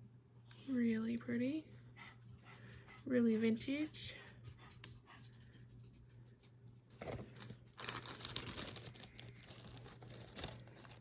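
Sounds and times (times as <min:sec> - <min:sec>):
plastic bag crinkling: 0:07.0 - 0:11.0.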